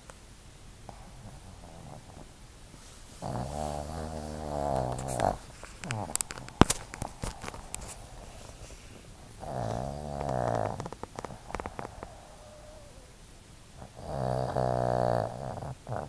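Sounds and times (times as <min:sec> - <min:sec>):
dog snoring: 0:00.9 - 0:02.4, 0:03.2 - 0:08.6, 0:09.4 - 0:13.2, 0:13.8 - 0:16.0.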